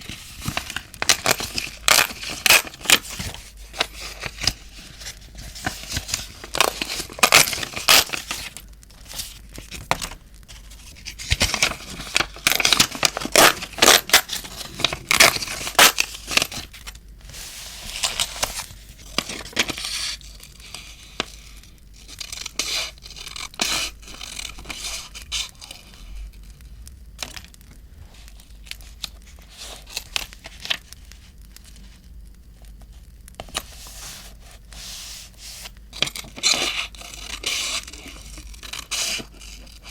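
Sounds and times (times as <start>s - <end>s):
paper being torn and rustled: 0.0s - 21.3s, 22.0s - 26.1s, 33.6s - 39.9s.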